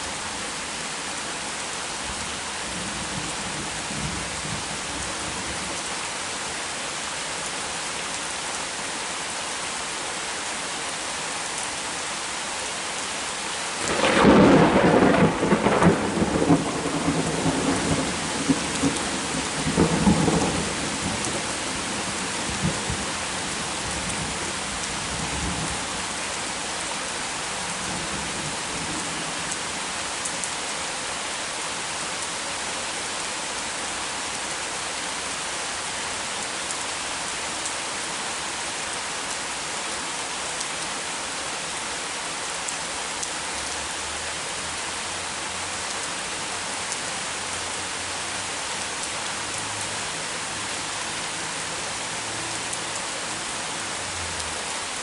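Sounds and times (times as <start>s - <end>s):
heavy rain: 0.0s - 55.0s
thunder clap and rumbles: 13.8s - 21.3s.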